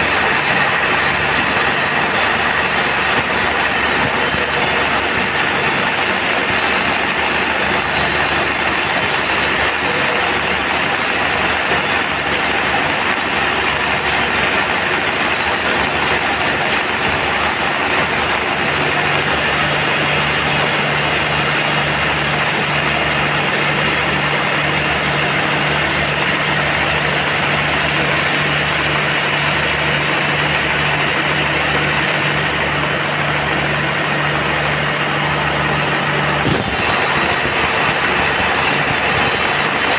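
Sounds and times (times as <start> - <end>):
band sawmill running: 0.0 - 39.9
high hiss: 36.4 - 39.9.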